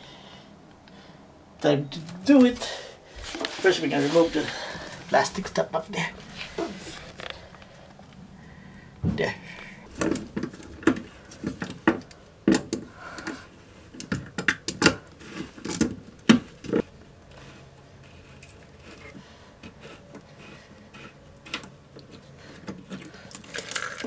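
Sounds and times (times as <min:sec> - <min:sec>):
plastic parts clicking and clattering: 0:21.4 - 0:24.0.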